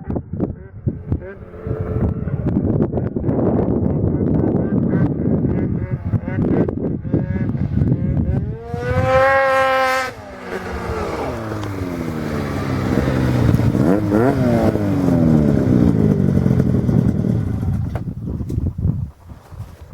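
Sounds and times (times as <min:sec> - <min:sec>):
snowmobile engine revving: 0:04.4 - 0:17.9.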